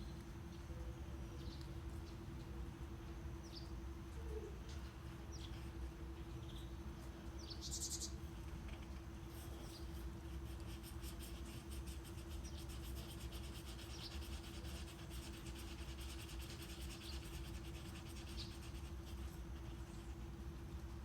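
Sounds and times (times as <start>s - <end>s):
low brown noise: 0.0s - 21.0s
steady hum: 0.0s - 21.0s
high falling bird chirps: 7.4s - 8.2s.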